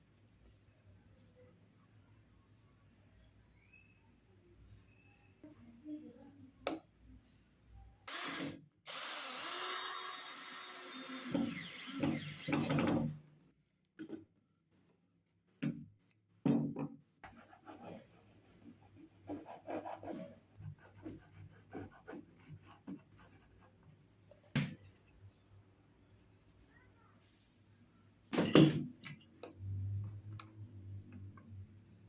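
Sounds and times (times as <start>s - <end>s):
electric drill running down: 8.1s - 12.7s.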